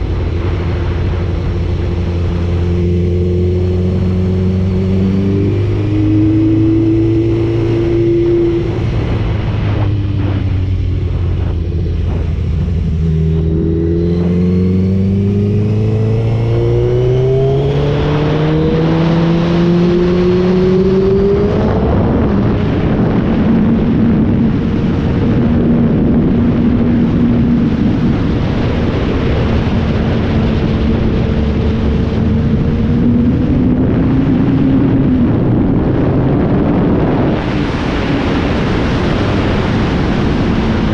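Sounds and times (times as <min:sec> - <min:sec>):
motorcycle engine accelerating: 0:00.0 - 0:40.9
wind rush: 0:00.0 - 0:40.9.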